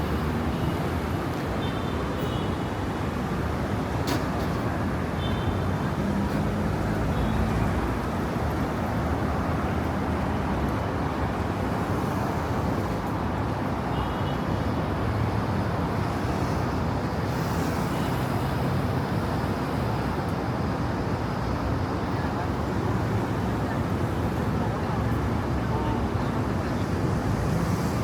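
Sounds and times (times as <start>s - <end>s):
road traffic rumble: 5.6s - 28.0s.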